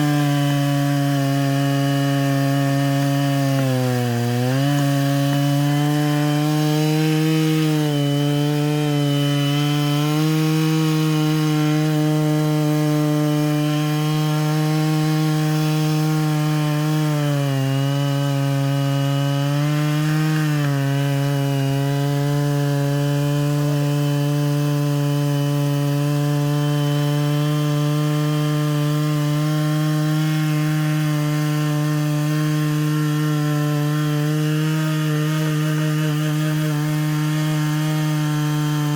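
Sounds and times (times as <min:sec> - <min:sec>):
chainsaw cutting log at high revs: 0:00.0 - 0:38.9.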